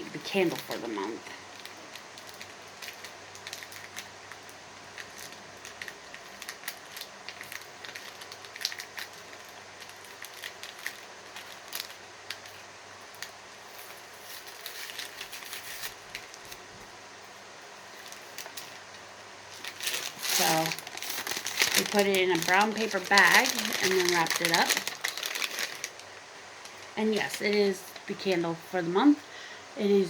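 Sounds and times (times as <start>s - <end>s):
paper wrapping rustling and crinkling: 0.0s - 16.9s, 17.8s - 28.6s.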